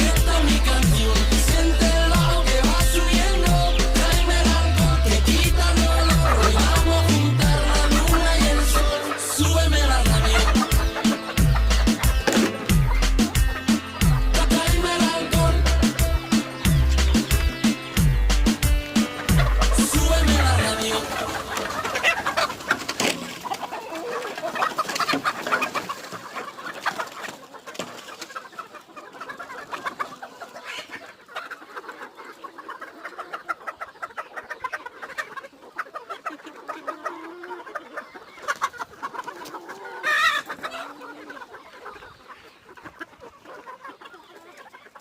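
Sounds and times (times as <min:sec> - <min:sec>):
loud chicken call: 0:00.0 - 0:27.4, 0:28.2 - 0:45.0
chickens clucking and calling: 0:00.0 - 0:45.0.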